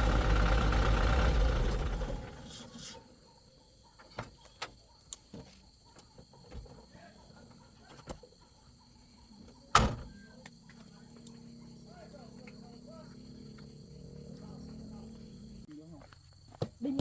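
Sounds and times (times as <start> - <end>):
heavy vehicle engine: 0.0 - 3.0.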